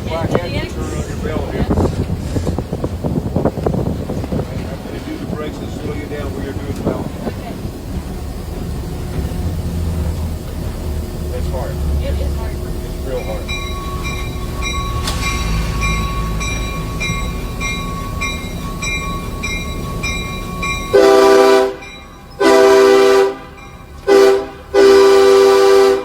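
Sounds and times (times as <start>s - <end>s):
diesel locomotive running: 0.0s - 26.0s
locomotive bell ringing: 4.6s - 26.0s
air horn blasts: 20.9s - 21.8s, 22.4s - 26.0s.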